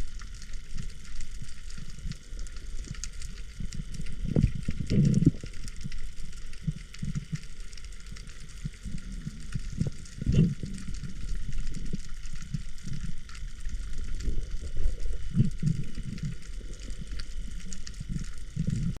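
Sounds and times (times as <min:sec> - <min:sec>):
fine crackle: 0:00.0 - 0:19.0
water movement: 0:00.0 - 0:19.0.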